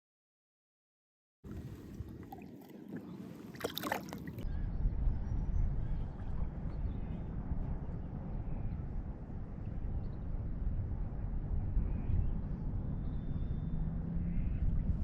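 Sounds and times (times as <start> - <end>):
wind rumbling on microphone: 1.4 - 15.0
water sloshing around boat: 1.5 - 4.4.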